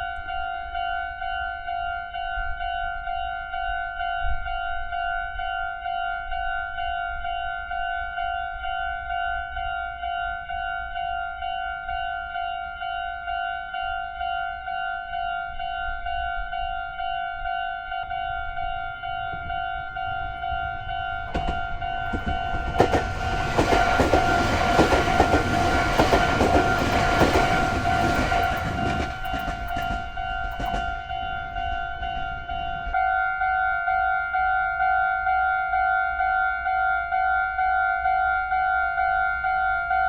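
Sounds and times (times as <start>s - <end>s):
level-crossing warning bell ringing: 0.0s - 40.0s
train wheels clattering over rail joints: 19.9s - 32.3s.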